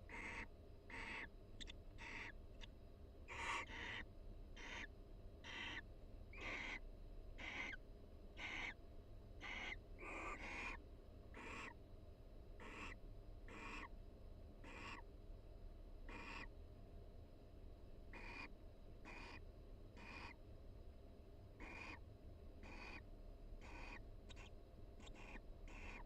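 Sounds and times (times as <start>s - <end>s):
owls hissing calls: 0.1s - 2.3s, 3.3s - 4.0s, 4.6s - 5.8s, 6.4s - 6.8s, 7.4s - 7.8s, 8.4s - 8.8s, 9.4s - 10.8s, 11.4s - 11.8s, 12.6s - 13.9s, 14.6s - 15.0s, 16.1s - 16.5s, 18.1s - 19.4s, 20.0s - 20.4s, 21.6s - 22.0s, 22.6s - 23.0s, 23.6s - 26.0s.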